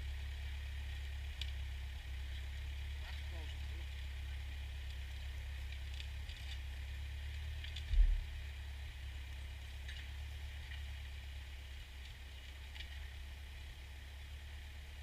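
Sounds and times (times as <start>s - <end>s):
tractor engine running: 0.0s - 15.0s
short low thump: 7.9s - 8.2s.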